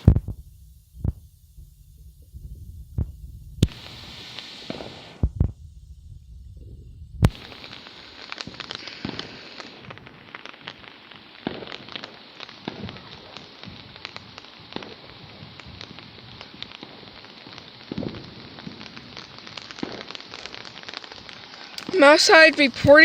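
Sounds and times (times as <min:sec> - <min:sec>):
rain pattering: 0:11.4 - 0:23.0.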